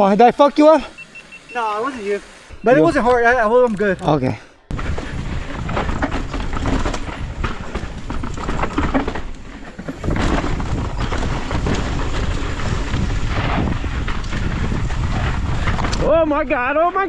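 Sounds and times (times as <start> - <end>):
bike tyres on loose dirt: 0.0 - 17.0
bike frame and chain rattling: 2.7 - 15.8
wind on microphone: 4.7 - 16.6.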